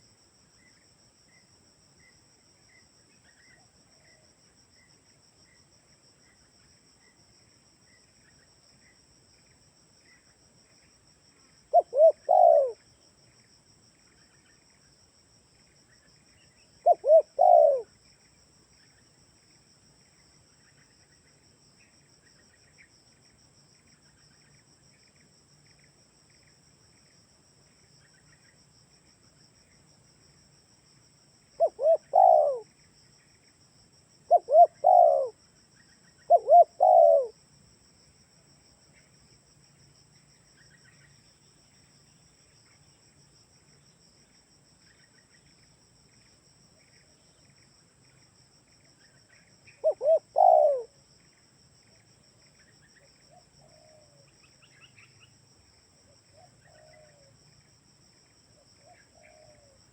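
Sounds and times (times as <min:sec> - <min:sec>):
dove cooing: 0:11.7 - 0:12.8, 0:16.8 - 0:17.9, 0:31.6 - 0:32.7, 0:34.3 - 0:35.4, 0:36.3 - 0:37.4, 0:49.7 - 0:51.0, 0:56.3 - 0:57.3, 0:58.8 - 0:59.8.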